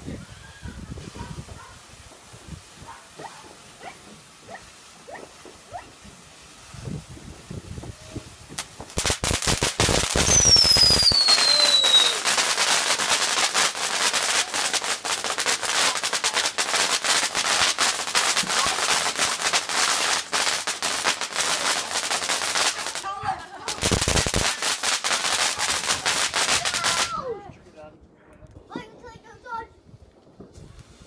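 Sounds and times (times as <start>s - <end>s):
fireworks crackling: 0.0s - 31.0s
high falling whistle: 10.2s - 12.2s.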